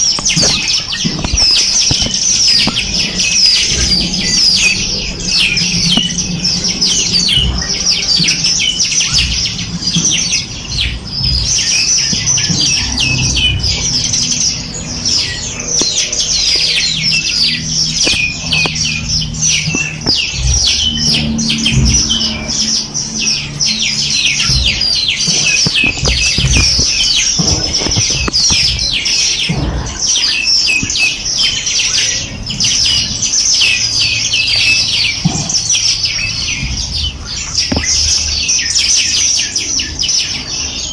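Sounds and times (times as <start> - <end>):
songbirds chirping and trilling: 0.0 - 40.9
low uneven rumble: 1.7 - 33.5.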